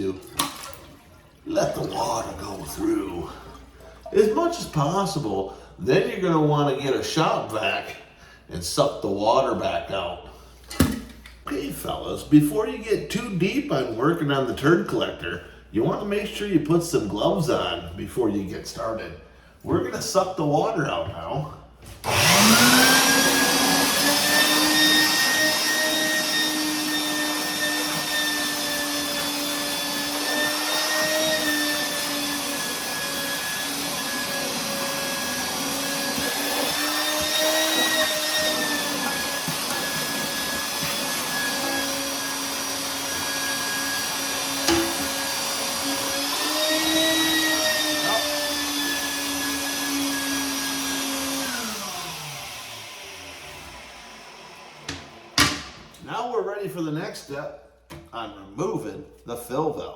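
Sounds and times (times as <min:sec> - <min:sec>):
shop vac motor whine: 0:22.0 - 0:56.0.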